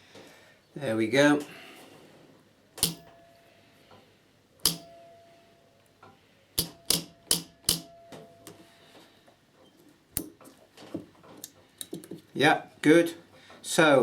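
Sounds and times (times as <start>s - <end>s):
spot welder sharp cracks: 2.8s - 3.1s.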